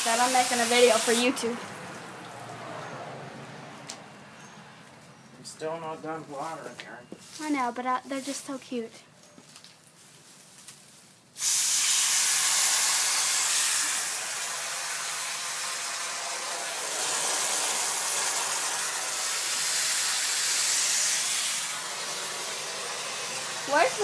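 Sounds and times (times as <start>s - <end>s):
garden hose spraying water: 0.0s - 2.9s, 7.4s - 8.9s, 9.9s - 24.0s.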